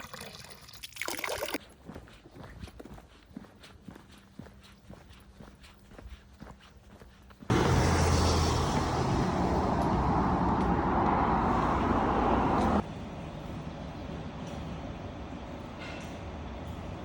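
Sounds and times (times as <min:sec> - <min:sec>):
vehicle rumble with hiss and hum: 0:07.5 - 0:17.0.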